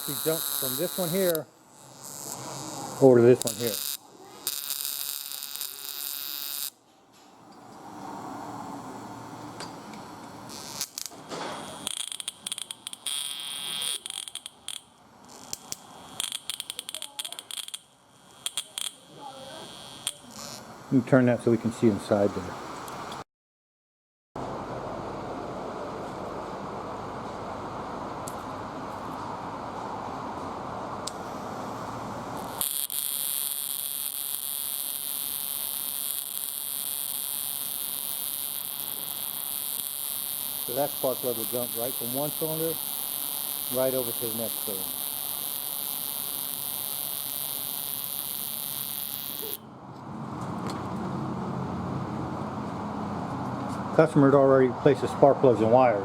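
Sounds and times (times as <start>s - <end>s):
electric spark snapping: 0.0s - 6.8s, 10.5s - 20.6s, 32.4s - 49.6s
high-pitched buzz: 0.0s - 6.8s, 10.5s - 20.8s, 32.3s - 49.6s.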